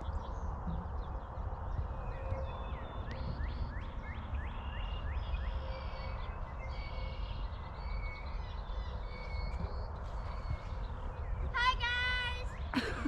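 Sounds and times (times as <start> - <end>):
birds singing: 0.0 - 13.0.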